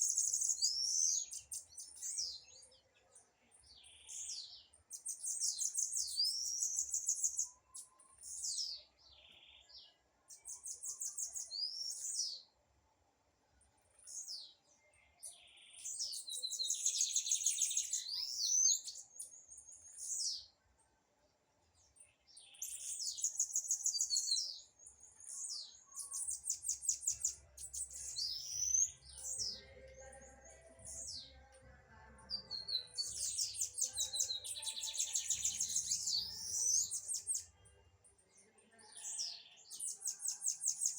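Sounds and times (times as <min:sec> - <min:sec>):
bird singing rapid trills: 0:00.0 - 0:02.5, 0:03.7 - 0:12.5, 0:15.2 - 0:20.4, 0:22.4 - 0:29.6, 0:32.4 - 0:37.6, 0:38.9 - 0:40.9.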